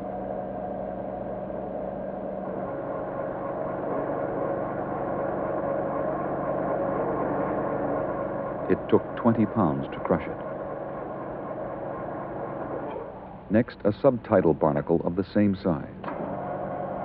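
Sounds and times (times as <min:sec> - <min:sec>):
testing machine humming: 0:00.0 - 0:17.0.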